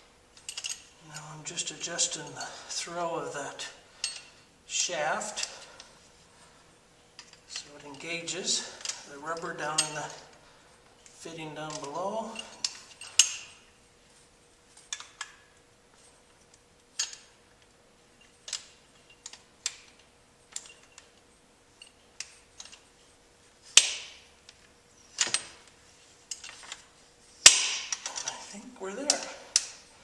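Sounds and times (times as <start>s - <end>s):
metallic clicks and clanks: 0.4s - 1.3s.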